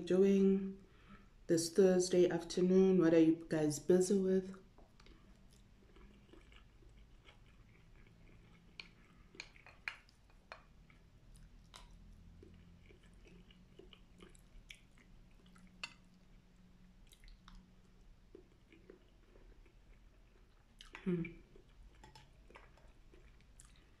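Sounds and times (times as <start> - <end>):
person chewing: 4.6 - 24.0
small clicks and ticks: 21.9 - 23.9.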